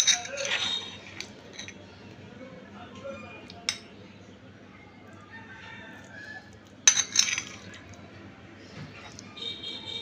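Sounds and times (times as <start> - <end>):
utensils clinking against dishes: 0.0 - 1.9, 6.8 - 7.8.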